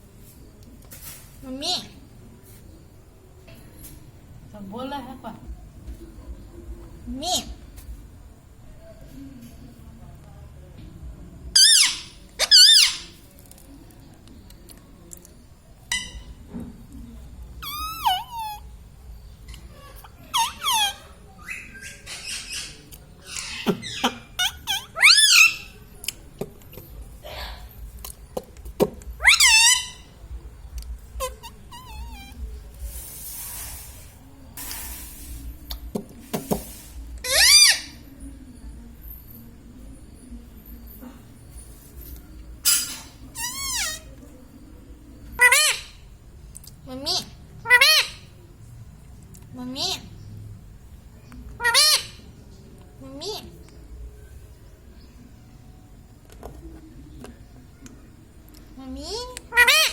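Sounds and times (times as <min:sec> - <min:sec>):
parakeet shrill calls: 0:11.6 - 0:13.2, 0:20.3 - 0:25.8, 0:29.2 - 0:30.1, 0:31.2 - 0:32.4, 0:37.2 - 0:38.0, 0:42.6 - 0:44.1, 0:45.4 - 0:46.0, 0:51.6 - 0:52.2, 0:59.5 - 0:59.9
parrot squawk: 0:11.6 - 0:13.2, 0:15.9 - 0:16.3, 0:17.6 - 0:18.6, 0:19.8 - 0:25.8, 0:29.2 - 0:30.1, 0:31.2 - 0:32.4, 0:37.2 - 0:38.0, 0:42.6 - 0:44.1, 0:45.4 - 0:46.0, 0:47.1 - 0:48.3, 0:51.6 - 0:52.3, 0:59.5 - 0:59.9.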